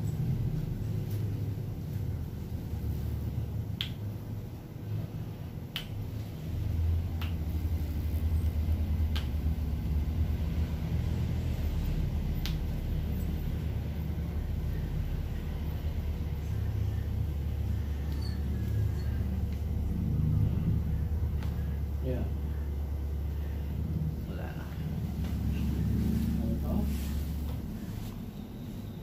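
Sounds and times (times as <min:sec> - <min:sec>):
steady low rumble: 0:00.0 - 0:29.0.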